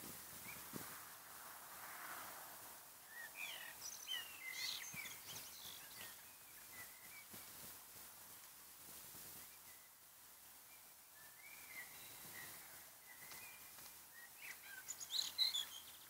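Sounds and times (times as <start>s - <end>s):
faint steady hiss: 0.0s - 16.0s
bird chirping and whistling: 14.6s - 16.0s.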